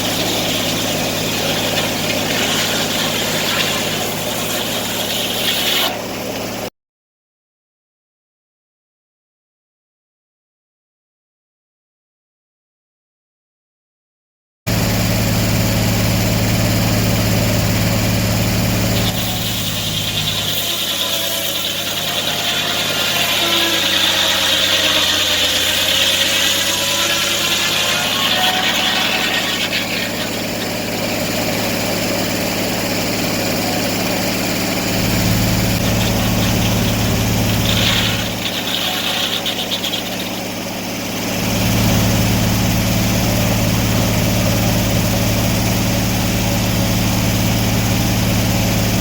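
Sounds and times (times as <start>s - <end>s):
saw blade cutting log: 0.0s - 6.7s, 18.6s - 42.4s
sawmill engine running: 0.0s - 6.7s, 14.7s - 49.0s.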